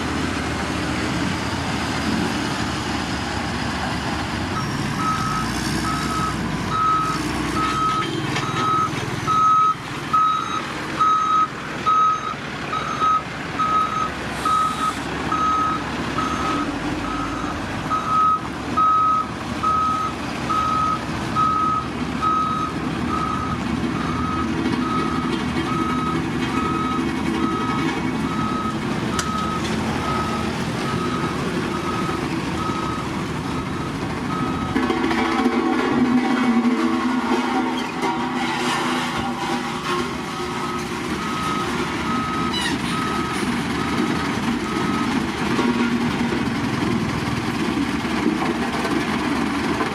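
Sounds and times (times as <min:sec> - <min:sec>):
diesel engine rumble: 0:00.0 - 0:49.9
reversing alarm beeping: 0:04.6 - 0:34.8, 0:40.4 - 0:45.2.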